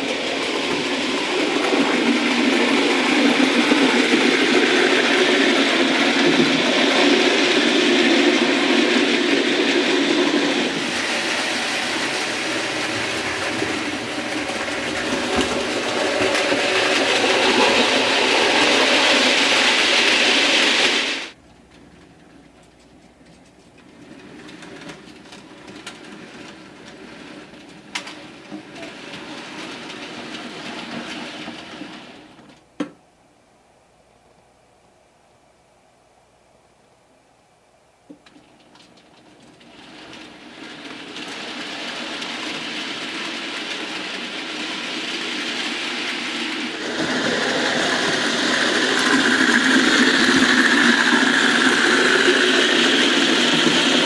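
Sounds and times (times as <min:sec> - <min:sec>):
model train motor whir: 0:00.0 - 0:21.4, 0:39.6 - 0:54.0.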